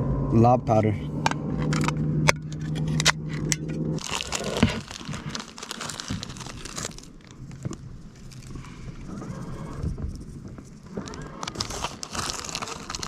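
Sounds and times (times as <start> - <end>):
low hum: 0.0 - 13.0
plastic packet crinkling: 4.0 - 8.8, 11.0 - 13.0.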